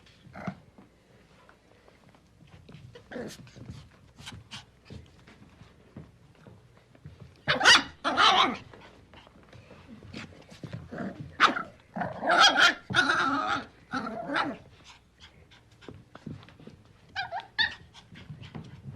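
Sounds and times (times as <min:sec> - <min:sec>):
puppy yelping: 0:07.5 - 0:08.6, 0:11.4 - 0:14.6, 0:17.2 - 0:18.0
puppy yipping: 0:07.5 - 0:08.6, 0:17.2 - 0:18.0.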